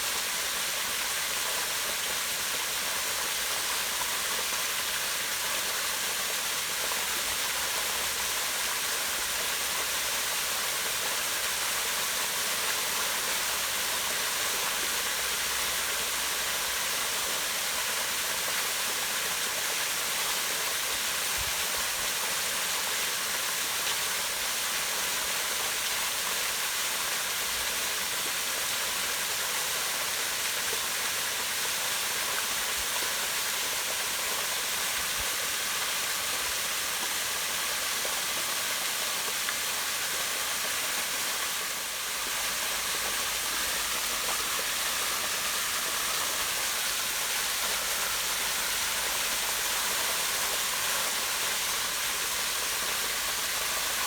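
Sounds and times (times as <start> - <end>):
waterfall rushing: 33.7 - 54.0.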